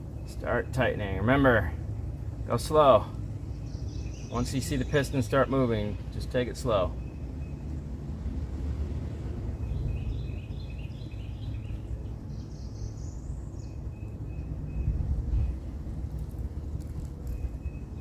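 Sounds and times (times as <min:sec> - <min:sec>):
steady low rumble: 0:00.0 - 0:18.0
bird chirping: 0:03.4 - 0:06.2, 0:06.8 - 0:07.8, 0:09.6 - 0:18.0.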